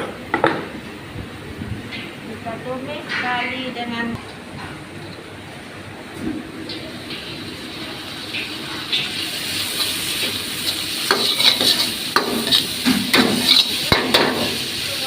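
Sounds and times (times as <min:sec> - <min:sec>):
food sizzling in hot oil: 0:06.7 - 0:15.0
spatula scraping a pan: 0:11.1 - 0:13.8.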